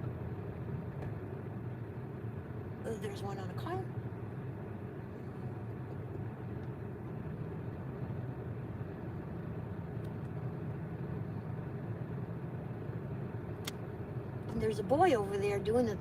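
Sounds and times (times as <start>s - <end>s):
car driving rumble: 0.0s - 16.0s.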